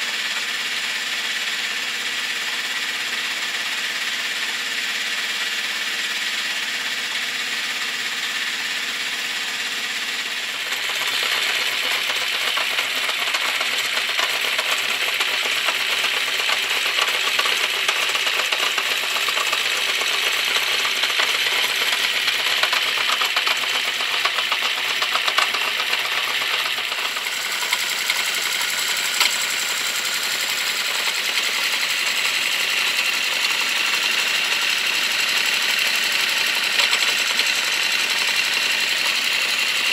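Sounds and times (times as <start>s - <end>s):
motorcycle engine idling: 0.0s - 39.9s
rapid mechanical clicking: 9.9s - 39.9s.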